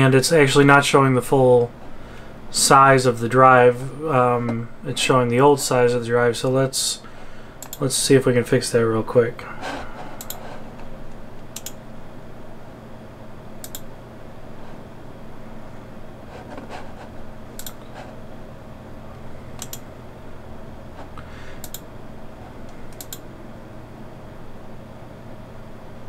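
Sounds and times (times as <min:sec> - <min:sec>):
desktop computer humming: 0:00.0 - 0:26.0
computer mouse clicking: 0:07.6 - 0:07.8, 0:10.2 - 0:10.9, 0:11.5 - 0:11.8, 0:13.6 - 0:13.9, 0:16.5 - 0:18.0, 0:19.6 - 0:19.8, 0:21.6 - 0:21.9, 0:22.6 - 0:23.2.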